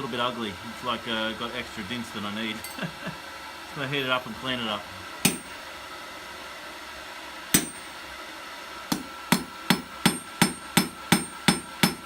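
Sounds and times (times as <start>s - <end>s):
hammer striking metal on anvil: 5.2s - 5.6s, 7.6s - 8.0s, 8.9s - 12.0s.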